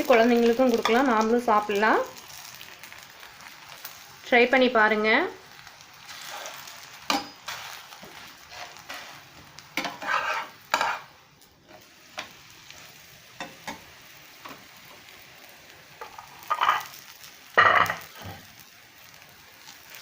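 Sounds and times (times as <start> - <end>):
flatbread sizzling in pan: 0.0 - 20.0
scraping strokes on pan: 5.6 - 14.7, 16.0 - 17.0.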